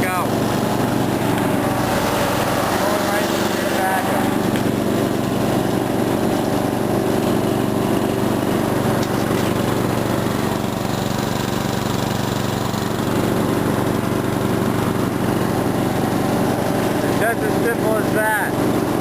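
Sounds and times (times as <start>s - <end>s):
riding mower engine running: 0.0s - 19.0s.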